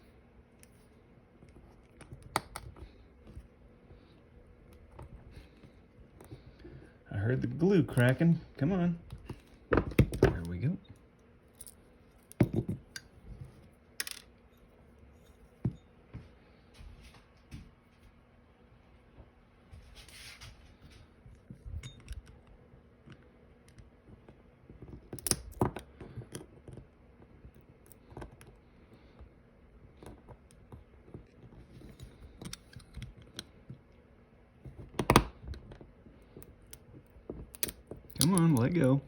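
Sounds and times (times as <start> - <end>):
metal model parts clicking and scraping: 14.0 - 14.3, 31.7 - 33.5, 37.6 - 39.0.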